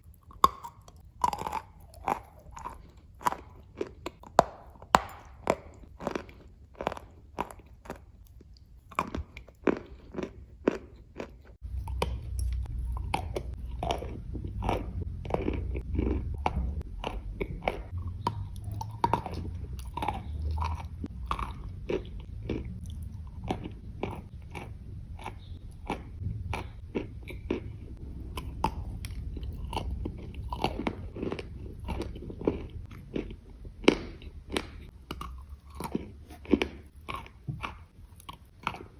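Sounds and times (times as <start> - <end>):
clay being chewed: 0.0 - 38.9.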